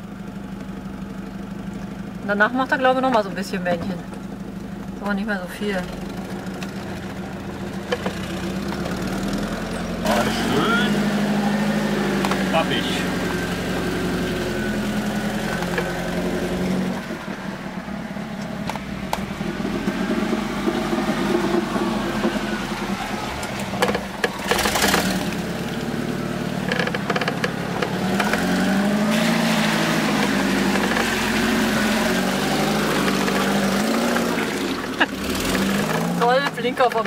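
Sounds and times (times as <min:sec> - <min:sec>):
off-road vehicle engine revving: 0:00.0 - 0:37.0
sharp knocks and clatter: 0:05.9 - 0:09.4, 0:23.4 - 0:25.5, 0:26.6 - 0:29.4.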